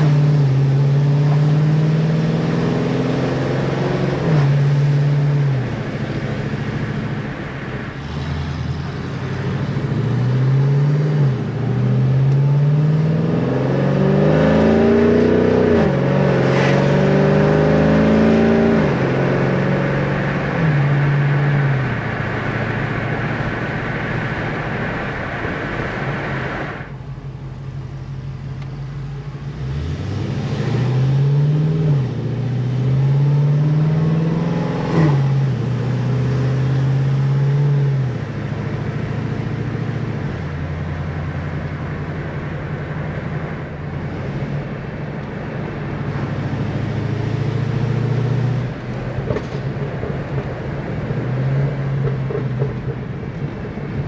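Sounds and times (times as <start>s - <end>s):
car exhaust revving: 0.0s - 54.0s
exhaust crack: 48.6s - 54.0s.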